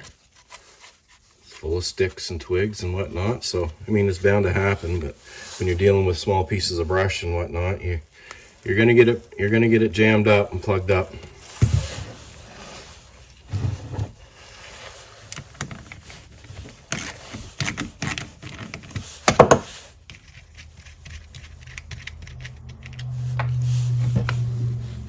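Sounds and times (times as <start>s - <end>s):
tools clicking and rattling: 15.4s - 23.2s.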